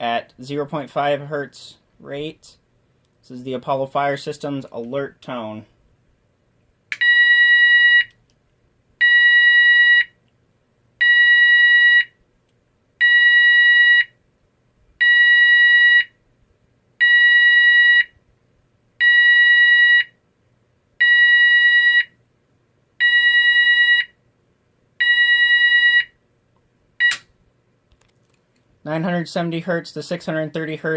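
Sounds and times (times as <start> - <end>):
intermittent alarm beeps: 7.0 - 8.2, 9.0 - 10.2, 11.0 - 12.2, 13.0 - 14.2, 15.0 - 16.2, 17.0 - 18.2, 19.0 - 20.2, 21.0 - 22.2, 23.0 - 24.2, 25.0 - 26.2, 27.0 - 27.2.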